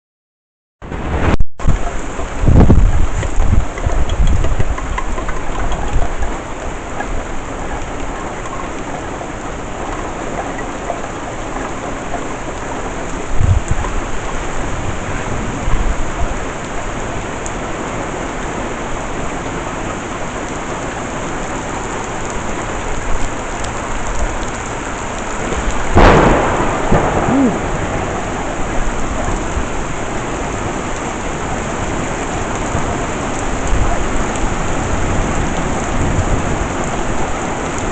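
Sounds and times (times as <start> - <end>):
thunder rolling: 0.8 - 16.6, 25.4 - 30.8
heavy rain: 0.8 - 37.9
loud thunder clap: 25.5 - 29.7.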